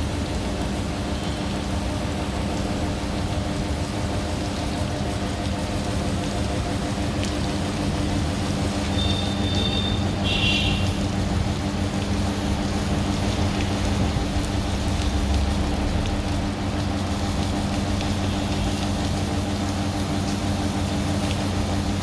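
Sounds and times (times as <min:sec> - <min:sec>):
welder electrical hum: 0:00.0 - 0:22.0.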